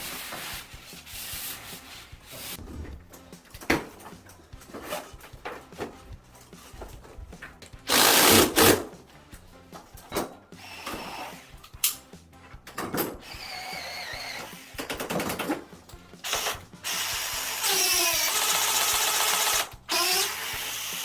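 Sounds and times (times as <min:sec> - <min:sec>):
tools and parts knocking and clicking: 0:11.6 - 0:13.2, 0:14.8 - 0:15.8.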